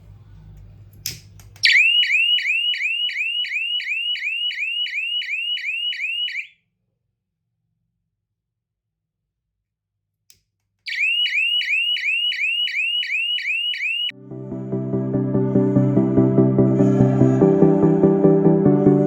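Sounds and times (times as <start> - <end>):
fire alarm wailing: 1.6 - 6.6, 10.9 - 14.2.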